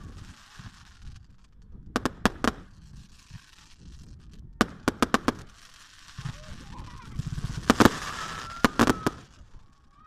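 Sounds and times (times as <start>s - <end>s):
fireworks exploding: 0.0s - 10.0s.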